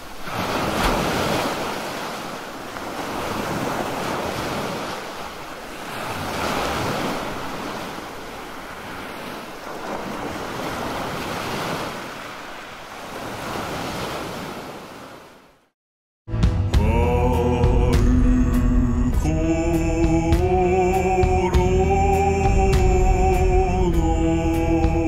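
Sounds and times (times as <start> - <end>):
sea waves breaking on beach: 0.0 - 15.8
wind: 0.0 - 15.8
music: 16.3 - 25.0.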